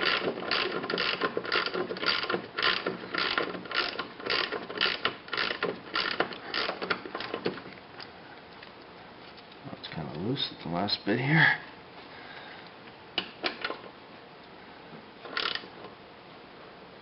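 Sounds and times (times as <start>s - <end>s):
socket ratchet clicking: 15.3s - 15.7s.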